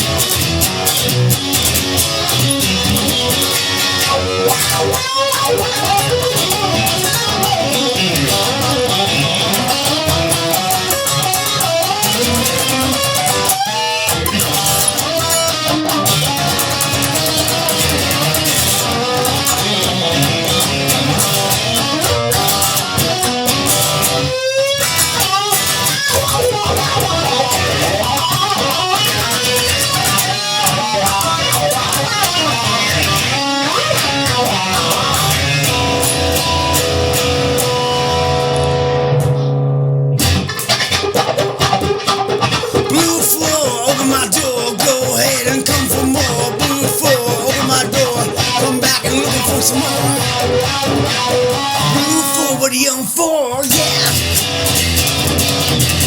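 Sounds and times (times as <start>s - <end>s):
bass and rhythm backing: 0.0s - 56.0s
electric guitar lead with bends: 0.0s - 56.0s.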